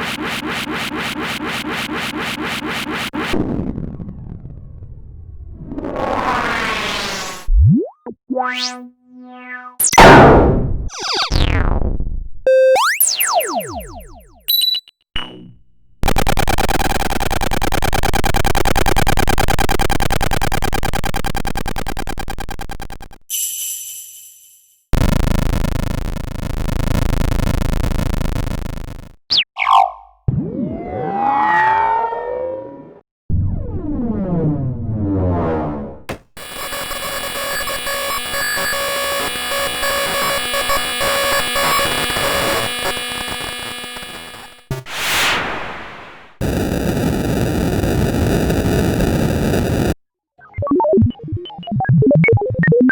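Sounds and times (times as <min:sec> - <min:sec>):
electronic blips: 0:07.2 - 0:11.6, 0:12.5 - 0:30.0, 0:36.1 - 0:46.7
pulsing electronic buzz: 0:15.2 - 0:23.2, 0:25.0 - 0:29.2, 0:36.2 - 0:50.0.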